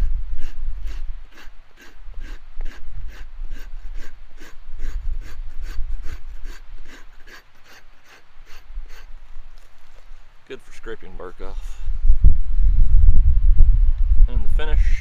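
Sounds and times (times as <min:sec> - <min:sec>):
knife scraping bark off wood: 0:00.0 - 0:10.1
low rumble: 0:11.8 - 0:15.0.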